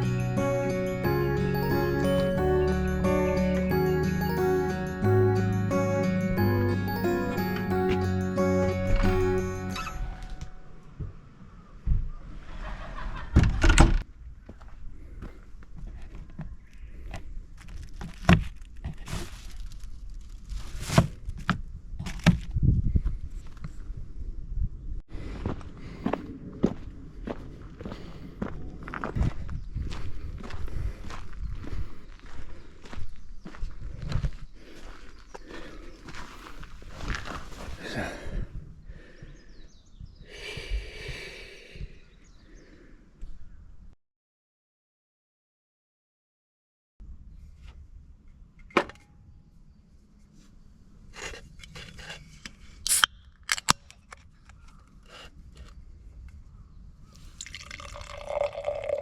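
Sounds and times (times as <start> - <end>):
outdoor ambience: 0.0 - 44.0, 47.0 - 59.0
footsteps on forest path: 25.1 - 38.2.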